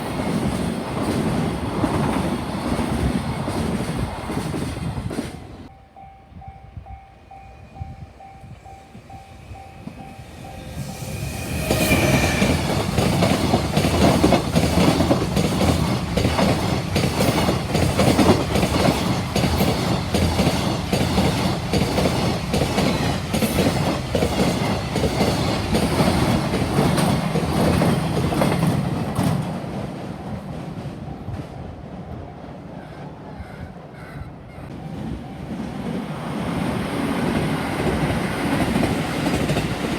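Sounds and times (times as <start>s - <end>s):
level-crossing alarm ringing: 5.7s - 13.6s
train wheels clacking over rail joints: 11.7s - 29.7s.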